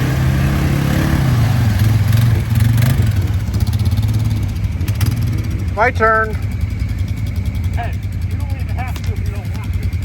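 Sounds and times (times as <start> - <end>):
atv engine running at low revs: 0.0 - 10.0.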